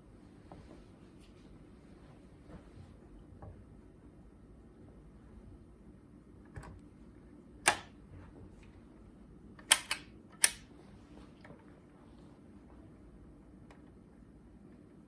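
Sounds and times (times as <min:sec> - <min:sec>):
record changer mechanism clicks: 0:07.6 - 0:08.0, 0:09.6 - 0:10.7.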